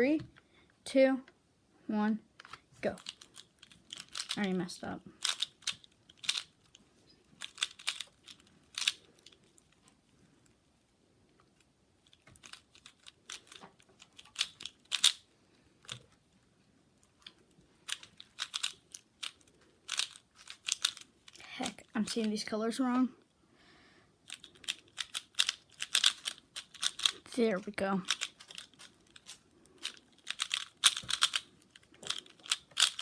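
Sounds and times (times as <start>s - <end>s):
plastic cube turning clicks: 2.4s - 4.4s, 5.2s - 6.8s, 7.4s - 9.4s, 12.1s - 15.2s, 17.2s - 21.8s, 24.3s - 27.2s, 28.0s - 33.0s.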